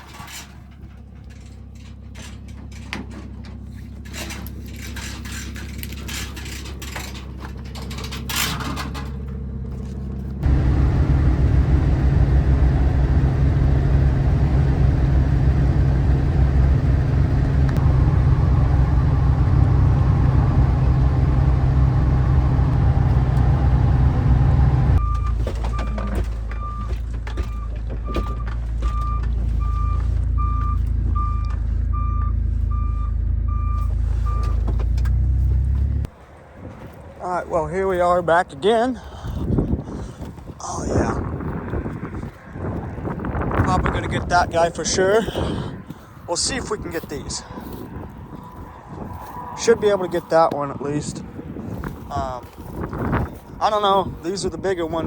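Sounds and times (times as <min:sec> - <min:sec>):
knocks and clatter: 0:00.0 - 0:11.1, 0:25.0 - 0:31.7
heavy machine engine running: 0:00.0 - 0:36.1
reversing beeper: 0:24.6 - 0:34.7.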